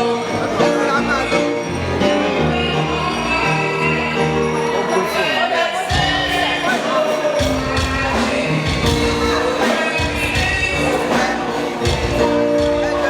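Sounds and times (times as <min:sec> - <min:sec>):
jingling percussion beat: 0:05.9 - 0:13.0.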